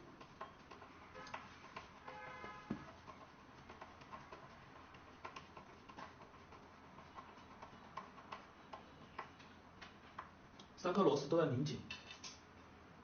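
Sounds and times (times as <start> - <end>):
knock: 2.4 - 2.9.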